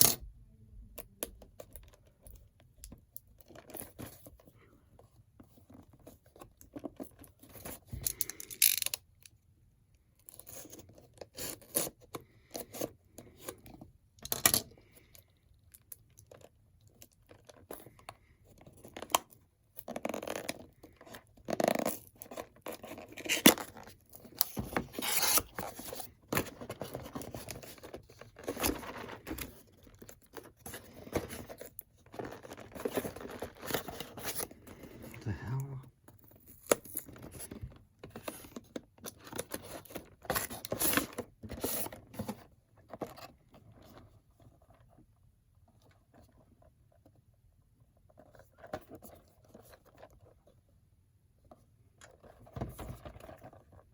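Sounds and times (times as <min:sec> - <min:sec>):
cardboard and plastic tearing: 0:19.8 - 0:35.0.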